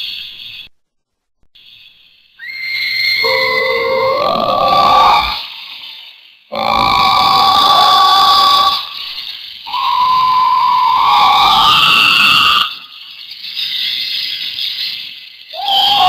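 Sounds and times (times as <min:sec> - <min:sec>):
cartoon monster cry: 0:03.2 - 0:05.4, 0:06.5 - 0:08.9, 0:09.7 - 0:12.8.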